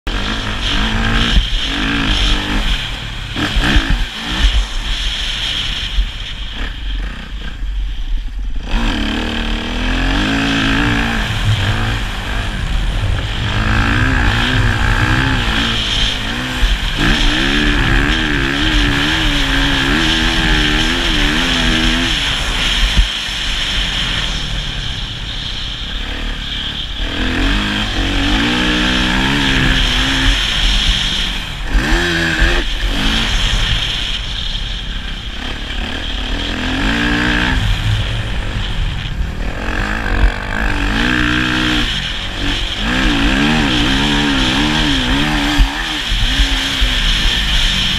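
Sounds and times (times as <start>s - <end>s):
motocross bike engine revving: 0.0s - 47.9s.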